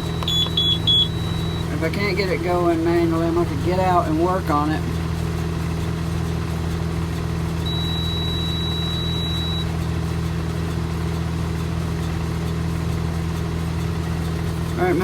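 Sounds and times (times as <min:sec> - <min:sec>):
long electronic beep: 0:00.0 - 0:01.7, 0:07.7 - 0:09.7
tractor engine running: 0:00.0 - 0:15.0.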